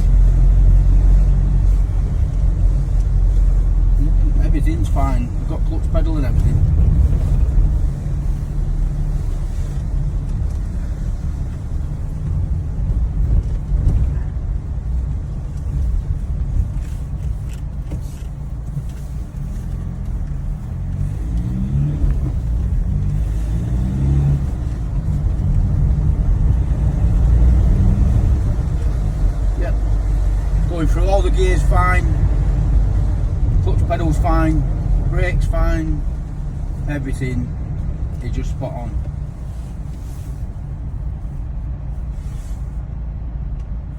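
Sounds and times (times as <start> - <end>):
van engine and road rumble: 0.0 - 43.9.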